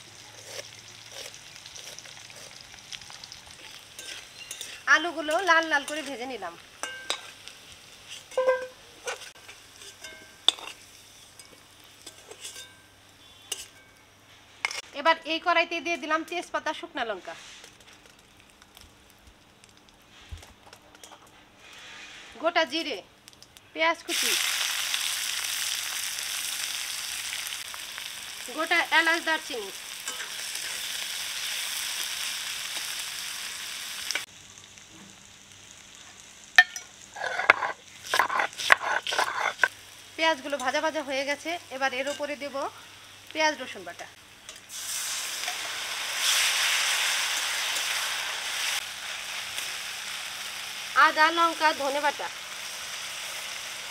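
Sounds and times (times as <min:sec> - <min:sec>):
faint oil sizzle: 0:00.0 - 0:53.9
metal spatula clinking on pan: 0:04.0 - 0:06.1, 0:06.8 - 0:07.4, 0:08.3 - 0:10.8, 0:11.4 - 0:12.9, 0:13.5 - 0:14.0, 0:36.6 - 0:39.7.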